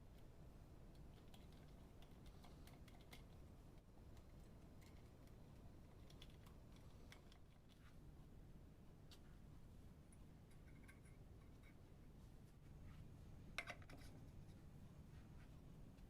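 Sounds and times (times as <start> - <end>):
quiet background hum: 0.0 - 16.0
light clicks and taps: 0.9 - 8.0.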